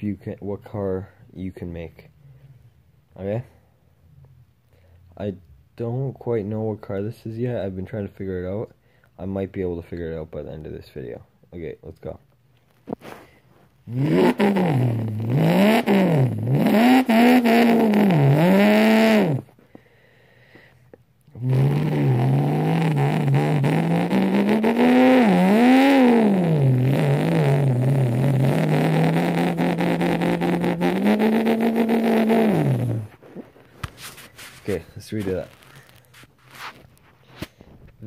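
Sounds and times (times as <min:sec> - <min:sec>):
person imitating car engine revving: 0:13.9 - 0:19.5, 0:21.3 - 0:33.2.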